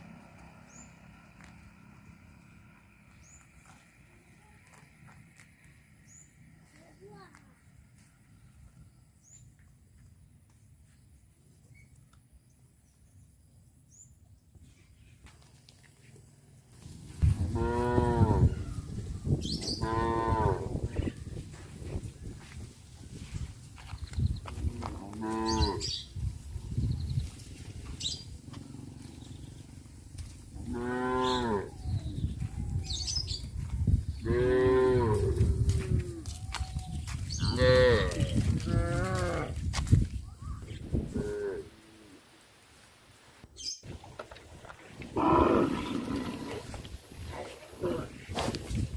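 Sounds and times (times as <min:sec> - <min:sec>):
cows mooing: 0:17.4 - 0:18.6, 0:19.6 - 0:20.8, 0:24.7 - 0:26.0, 0:30.6 - 0:31.8, 0:34.2 - 0:35.5, 0:37.4 - 0:39.6, 0:45.1 - 0:46.8.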